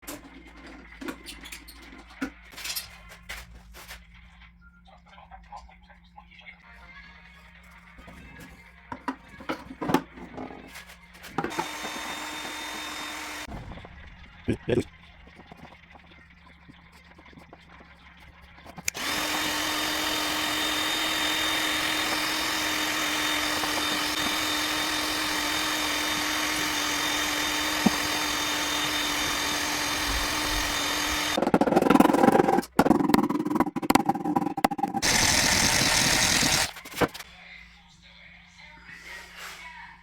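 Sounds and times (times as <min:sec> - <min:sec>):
power tool motor humming: 0:11.4 - 0:13.5, 0:18.8 - 0:37.2.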